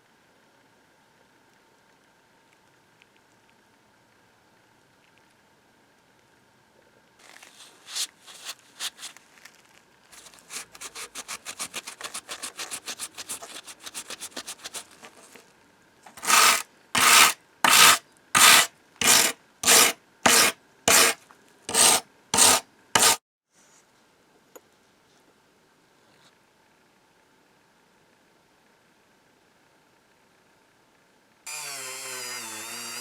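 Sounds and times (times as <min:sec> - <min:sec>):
hand rubbing on metal: 0:07.3 - 0:09.2, 0:10.2 - 0:15.4, 0:16.1 - 0:23.2.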